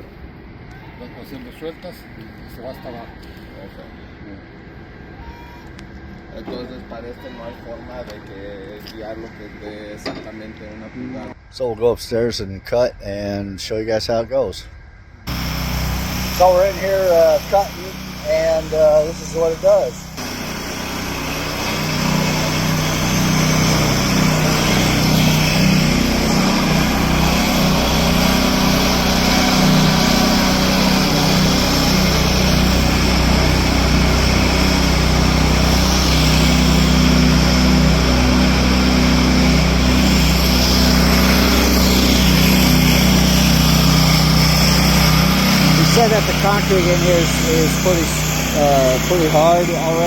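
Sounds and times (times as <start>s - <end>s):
concrete saw cutting: 15.3s - 50.0s.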